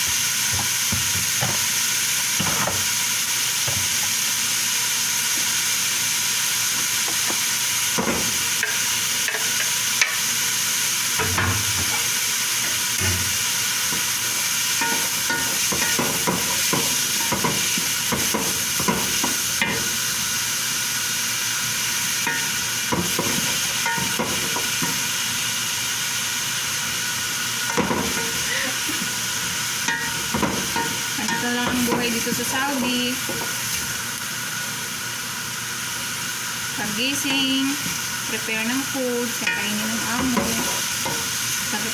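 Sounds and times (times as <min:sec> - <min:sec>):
garlic and onion sizzling: 0:00.0 - 0:41.9
utensil scraping pan: 0:39.4 - 0:41.4.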